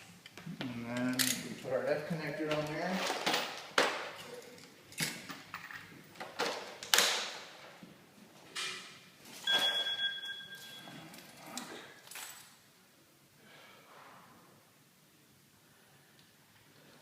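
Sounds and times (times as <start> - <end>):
phone ringing: 9.5 - 10.9.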